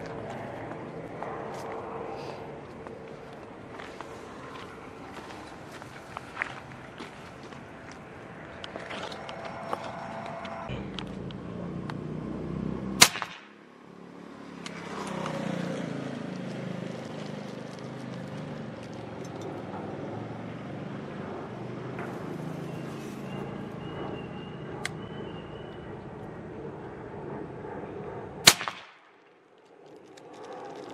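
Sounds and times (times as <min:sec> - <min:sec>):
air rifle shot: 0:13.0 - 0:13.6, 0:28.4 - 0:29.1.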